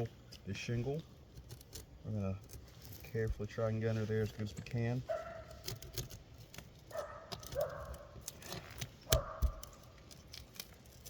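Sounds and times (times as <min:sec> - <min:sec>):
pry bar knocking under shingle: 0:06.9 - 0:10.4.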